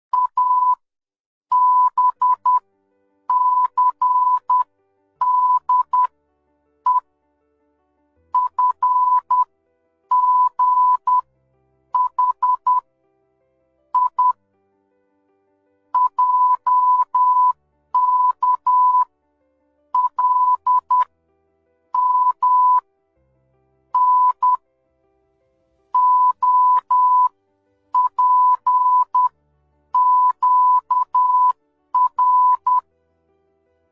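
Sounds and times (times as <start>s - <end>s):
morse code beeps: 0.2s - 0.8s, 1.5s - 2.6s, 3.3s - 6.1s, 8.4s - 9.5s, 10.1s - 11.2s, 12.0s - 12.8s, 14.0s - 14.4s, 16.0s - 19.1s, 20.0s - 21.1s, 22.0s - 22.8s, 24.0s - 24.6s, 26.0s - 27.3s, 28.0s - 29.3s, 30.0s - 32.8s.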